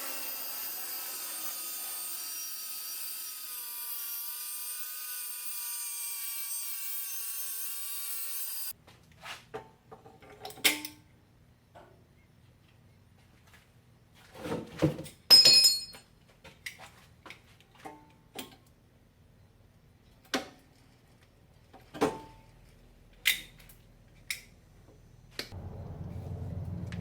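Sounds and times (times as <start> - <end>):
metallic clinks of tools: 15.3 - 16.0.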